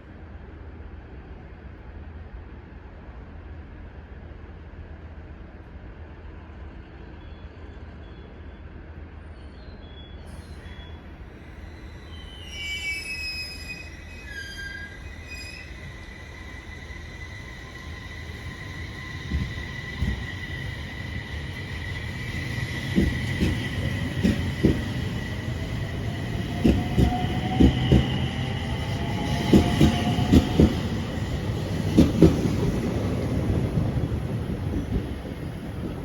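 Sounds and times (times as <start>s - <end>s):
train wheels running: 15.8s - 36.0s.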